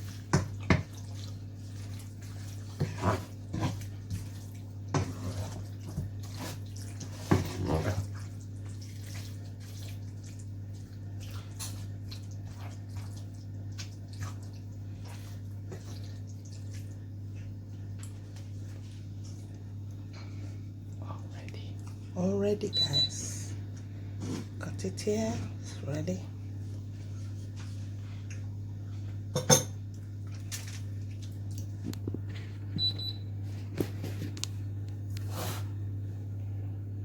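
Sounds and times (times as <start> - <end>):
steady low hum: 7.8 - 37.0.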